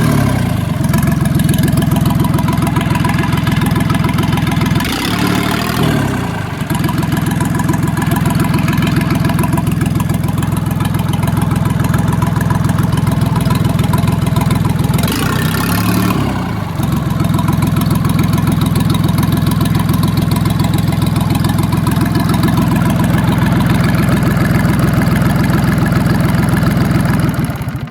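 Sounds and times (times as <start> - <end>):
marine diesel engine running: 0.0 - 27.9.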